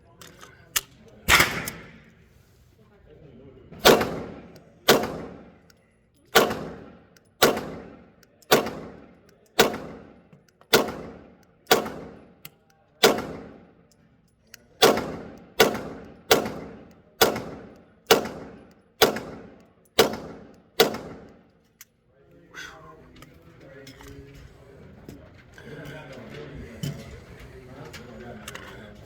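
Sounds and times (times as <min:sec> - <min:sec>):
pistol shots with echo: 0:01.2 - 0:02.1, 0:03.8 - 0:05.7, 0:06.3 - 0:13.8, 0:14.7 - 0:21.5.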